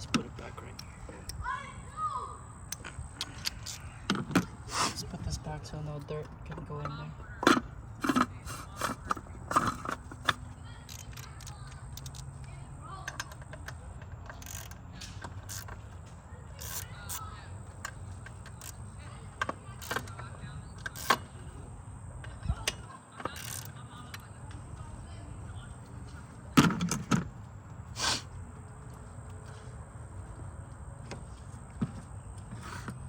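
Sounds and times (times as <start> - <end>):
tools clicking on engine parts: 2.5 - 4.6, 5.9 - 21.5, 22.2 - 24.6.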